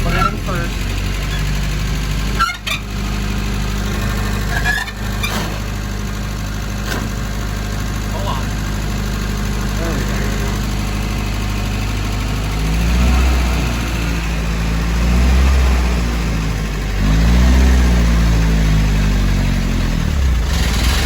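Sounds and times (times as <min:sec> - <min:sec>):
car engine idling and revving: 0:00.0 - 0:21.0.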